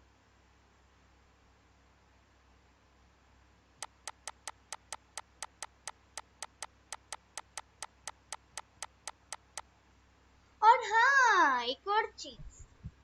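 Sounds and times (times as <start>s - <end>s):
faint room hum: 0.0s - 13.0s
rapid sharp clicks: 3.8s - 9.7s.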